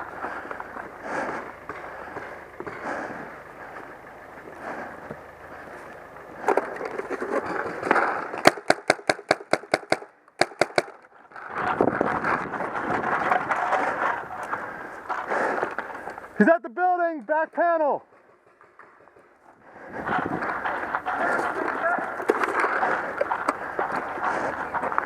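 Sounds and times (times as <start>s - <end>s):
paintball marker shots: 8.0s - 11.0s.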